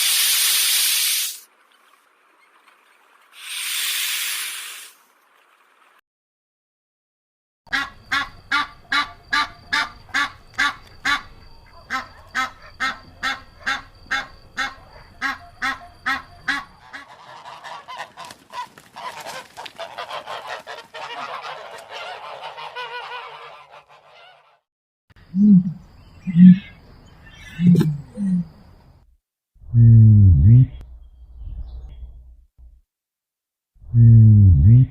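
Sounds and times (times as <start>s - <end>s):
flock calling: 7.7s - 18.3s, 25.3s - 28.6s
waterfowl honking: 7.7s - 24.6s
deep low bird calls: 25.2s - 28.8s, 29.6s - 32.4s, 33.8s - 34.9s.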